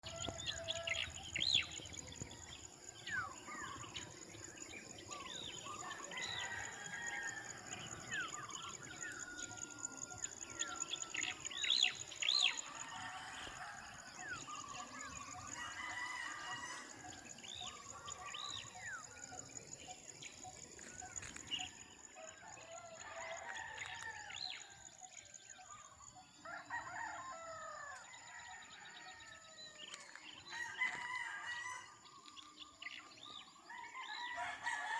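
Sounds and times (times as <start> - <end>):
roosters crowing: 5.7 - 8.4, 12.5 - 17.4, 22.3 - 24.8, 26.4 - 29.7, 30.4 - 32.1, 33.7 - 34.9.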